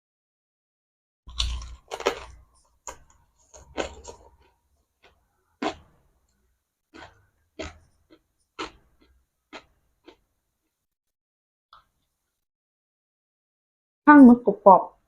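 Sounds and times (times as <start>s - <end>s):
chewing crunchy food: 1.3s - 10.2s.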